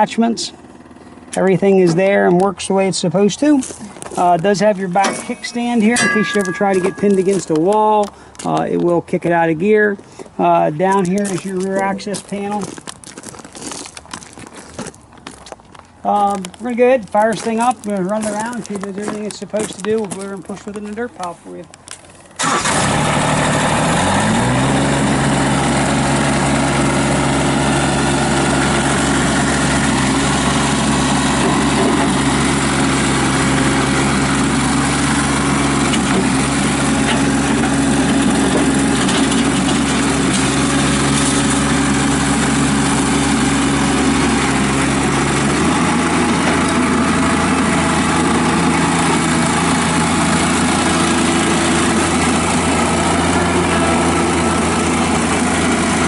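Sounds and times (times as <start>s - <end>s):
diesel engine running: 0.0s - 8.6s, 9.3s - 13.6s, 15.8s - 56.0s.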